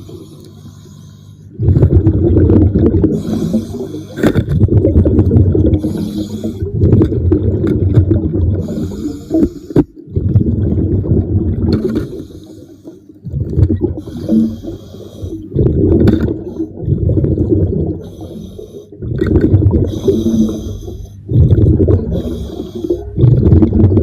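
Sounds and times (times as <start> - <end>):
hissing inhale through regulator: 0.0 - 1.6, 3.0 - 4.4, 5.7 - 6.8, 8.6 - 10.0, 11.9 - 13.2, 14.0 - 15.6, 18.0 - 19.0, 19.8 - 21.3, 22.0 - 23.2
bubbling exhaled air: 0.0 - 24.0.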